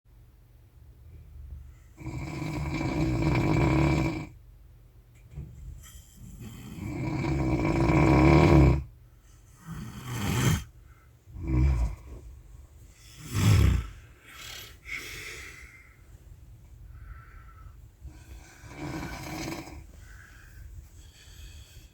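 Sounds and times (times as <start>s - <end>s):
quiet breathing: 1.0s - 3.3s, 5.6s - 7.6s, 8.8s - 21.9s
person snoring: 2.0s - 4.3s, 6.3s - 8.9s, 9.6s - 10.7s, 11.3s - 12.2s, 13.0s - 15.8s, 18.1s - 20.3s.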